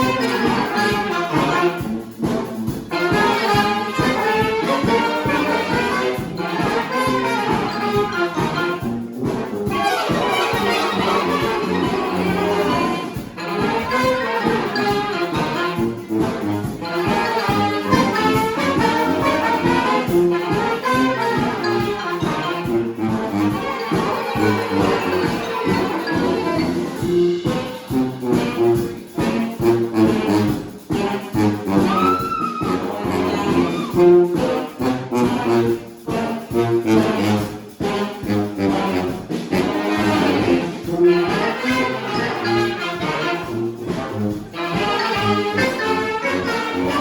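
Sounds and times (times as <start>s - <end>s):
brass band playing: 0.0s - 47.0s
drum hits: 0.0s - 47.0s
trumpets and trombones: 0.0s - 47.0s.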